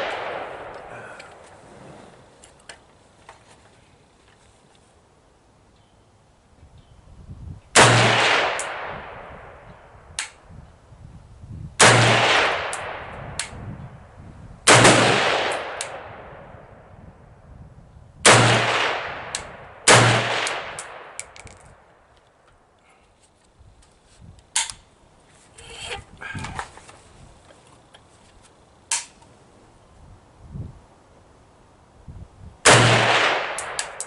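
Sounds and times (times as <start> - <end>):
rifle shots with echo: 0.0 - 0.9, 7.8 - 9.6, 11.8 - 13.1, 14.7 - 16.5, 18.2 - 21.4, 32.6 - 34.0.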